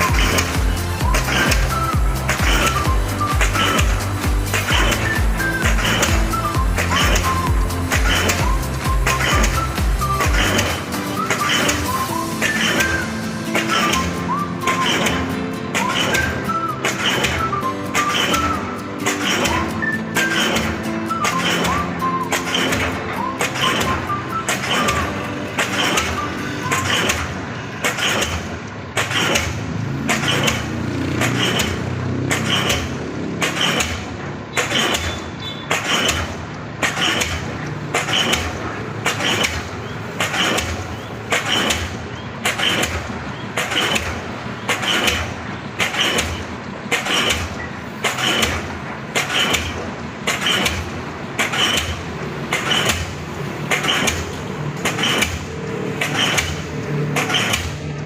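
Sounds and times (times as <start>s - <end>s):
diesel pile hammer striking: 0.0s - 58.0s.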